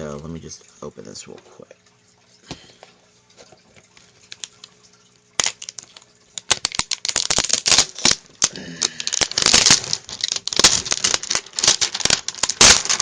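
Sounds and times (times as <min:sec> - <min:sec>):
packaging crinkling: 0:04.2 - 0:13.0.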